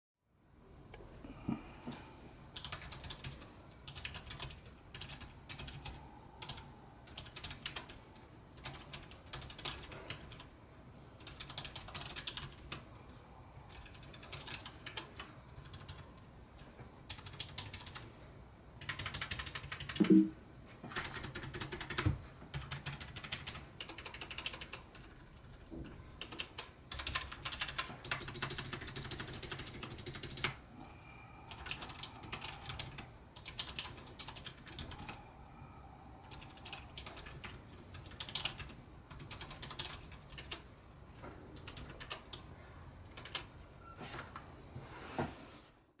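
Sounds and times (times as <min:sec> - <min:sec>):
keyboard typing: 0:02.6 - 0:08.0, 0:08.6 - 0:10.5, 0:11.2 - 0:12.8, 0:13.7 - 0:18.1, 0:18.8 - 0:30.6, 0:31.5 - 0:35.2, 0:36.2 - 0:40.7, 0:41.6 - 0:43.5.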